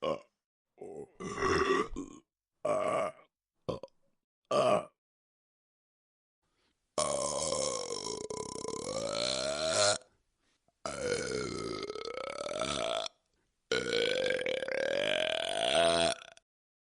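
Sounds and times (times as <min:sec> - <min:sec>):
long human burps: 0:00.0 - 0:05.0, 0:07.0 - 0:10.1, 0:10.9 - 0:16.4.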